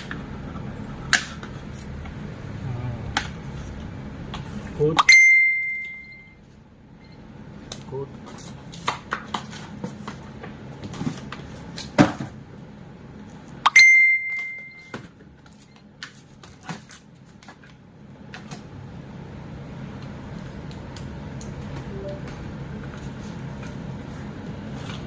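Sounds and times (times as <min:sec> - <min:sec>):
steady high beep: 0:05.0 - 0:06.4, 0:13.7 - 0:14.9, 0:21.9 - 0:22.3.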